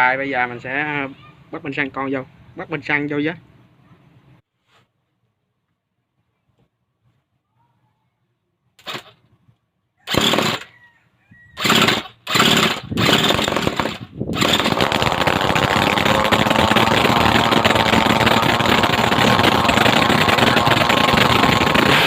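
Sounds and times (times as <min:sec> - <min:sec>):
brush cutter engine starting: 0:10.1 - 0:10.7, 0:11.6 - 0:22.0.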